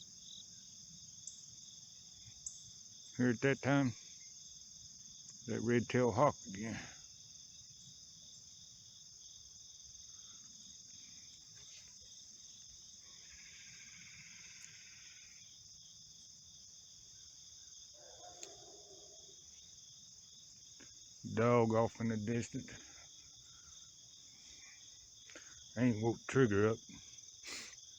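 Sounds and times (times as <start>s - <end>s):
chorus of crickets and insects: 0.0s - 27.9s
faint drawn-out call: 13.0s - 15.5s
distant dog barking: 18.0s - 19.5s.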